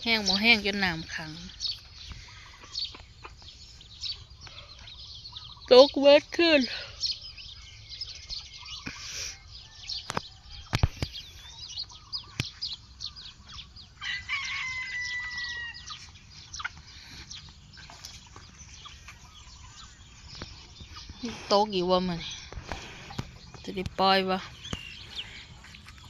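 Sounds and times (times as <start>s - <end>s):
bird chirps: 0.0s - 26.0s
rooster crowing: 14.0s - 16.0s.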